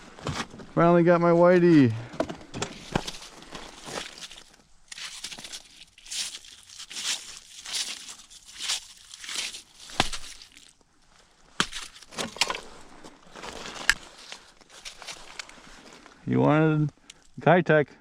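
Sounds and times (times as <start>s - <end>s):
crunching on snowy ice: 2.7s - 16.3s.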